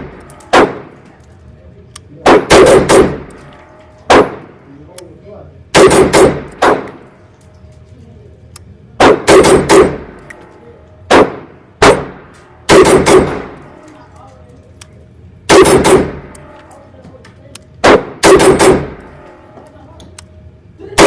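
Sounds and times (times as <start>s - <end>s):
rifle gunshots with echo: 0.0s - 1.0s, 2.2s - 3.4s, 4.1s - 4.5s, 5.8s - 7.1s, 9.0s - 10.3s, 11.1s - 13.6s, 15.5s - 16.3s, 17.8s - 19.0s.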